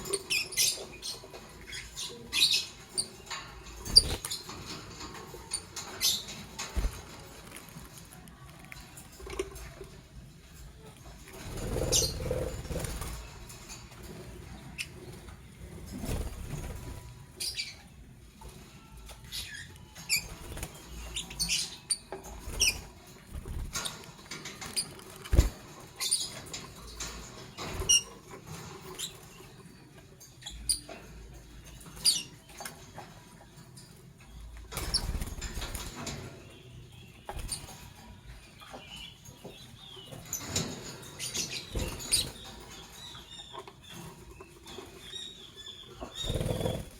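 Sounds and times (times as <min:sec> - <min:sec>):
birds chirping: 0:00.0 - 0:46.9
scratching and rustling in cage: 0:00.0 - 0:46.9
wings flapping: 0:03.8 - 0:04.5, 0:06.6 - 0:07.8, 0:11.3 - 0:13.4, 0:15.8 - 0:17.2, 0:22.4 - 0:25.7, 0:34.8 - 0:36.2, 0:37.3 - 0:37.8, 0:46.2 - 0:46.9.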